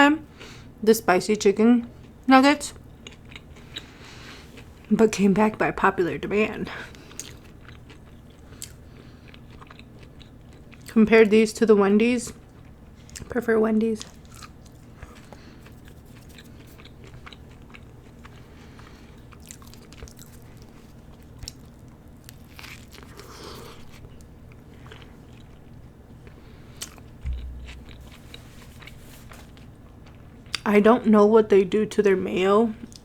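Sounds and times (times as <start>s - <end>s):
person chewing food: 6.9s - 10.9s, 14.0s - 30.6s
dull low thump: 27.2s - 28.4s.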